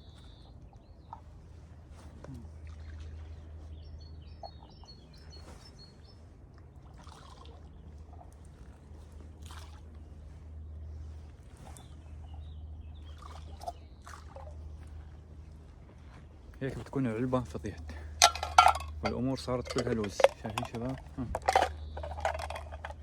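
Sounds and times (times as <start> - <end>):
water trickling and splashing: 0.0 - 23.0
bird chirping: 19.1 - 23.0.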